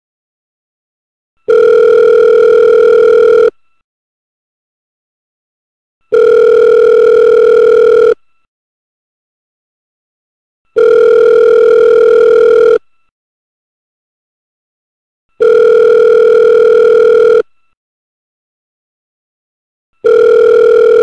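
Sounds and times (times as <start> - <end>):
electronic telephone ringing: 1.5 - 3.5, 6.1 - 8.2, 10.7 - 12.8, 15.4 - 17.5, 20.0 - 21.0.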